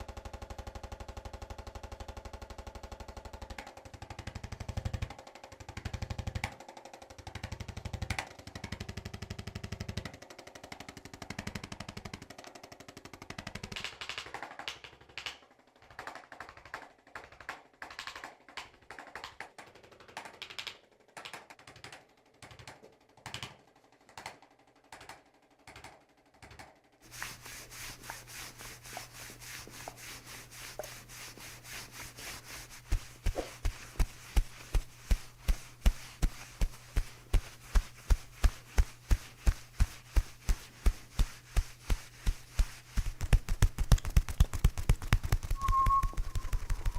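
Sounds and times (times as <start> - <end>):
rapid mechanical tapping: 26.7 - 46.9.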